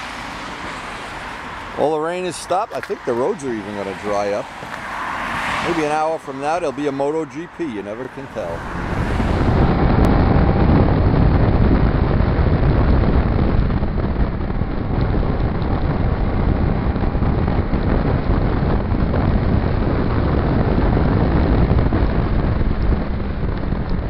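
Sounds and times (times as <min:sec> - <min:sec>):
tyres on wet road: 0:00.0 - 0:11.2
wind rush on microphone: 0:00.0 - 0:24.0
motorcycle engine: 0:08.0 - 0:12.1.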